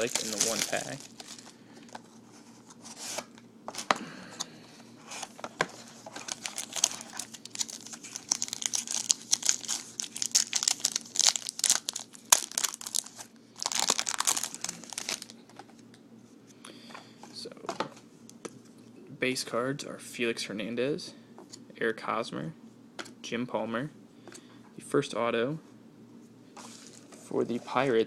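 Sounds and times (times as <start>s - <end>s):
wrapping tearing and crinkling: 0.0s - 2.0s, 6.1s - 15.4s.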